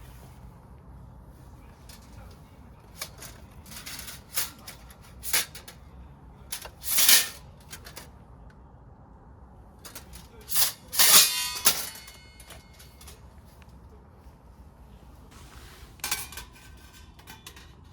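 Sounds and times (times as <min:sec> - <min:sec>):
camping gear clattering: 0:01.7 - 0:05.8, 0:06.5 - 0:08.1, 0:09.8 - 0:13.2
ringing clink: 0:10.6 - 0:13.1.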